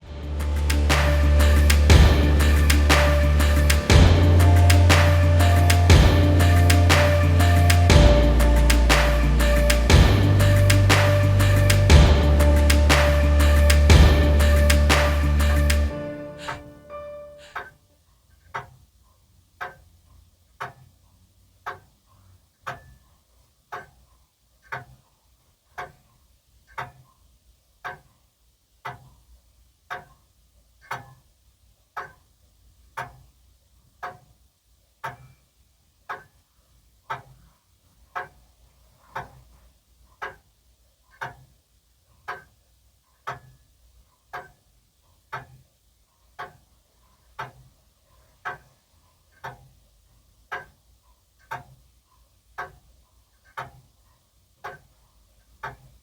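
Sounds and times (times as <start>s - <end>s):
clock ticking: 0.2s - 17.7s, 24.7s - 25.0s, 26.7s - 27.0s, 27.8s - 28.1s, 28.8s - 29.2s, 30.9s - 31.2s, 31.9s - 32.2s, 35.0s - 35.4s, 37.1s - 37.5s, 39.1s - 39.5s, 40.2s - 40.5s, 41.1s - 41.6s, 43.2s - 43.6s, 44.3s - 44.6s, 46.3s - 46.7s, 47.3s - 47.7s, 48.4s - 48.8s, 49.4s - 49.8s, 50.4s - 50.8s, 51.4s - 51.8s, 52.5s - 53.9s, 55.5s - 56.0s.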